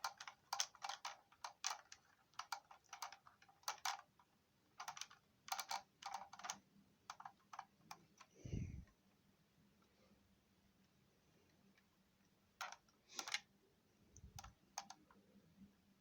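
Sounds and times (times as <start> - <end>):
plastic toy clicking: 0.0 - 8.3, 12.6 - 13.5, 14.3 - 15.2.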